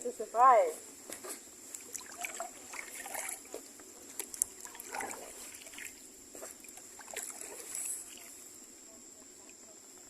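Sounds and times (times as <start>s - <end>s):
water trickling: 1.7s - 8.4s
paddle splashing in water: 1.8s - 8.4s.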